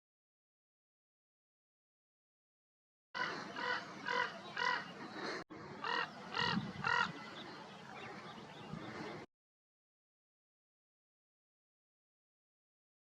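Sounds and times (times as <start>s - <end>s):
bird calling: 3.2s - 9.2s.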